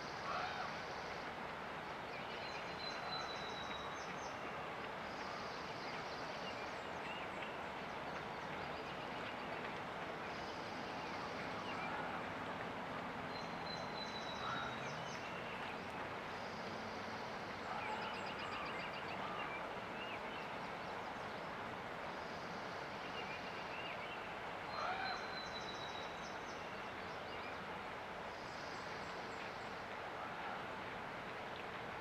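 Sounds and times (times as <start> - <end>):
river water rushing: 0.0 - 32.0
songbirds singing: 13.3 - 21.5.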